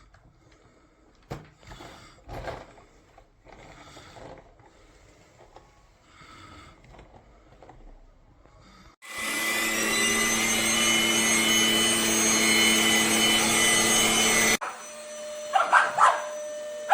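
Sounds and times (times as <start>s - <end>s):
stick vacuum cleaner running: 9.0s - 16.9s.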